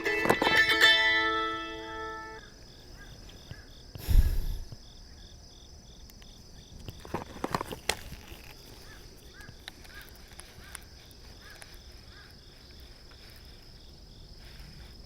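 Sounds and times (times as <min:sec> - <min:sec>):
music notes ringing: 0:00.0 - 0:02.5
crickets chirping: 0:00.0 - 0:15.0.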